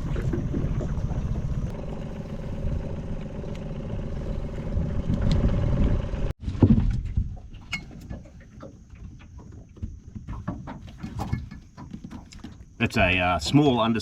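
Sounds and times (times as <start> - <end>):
boat motor running: 0.0 - 6.4.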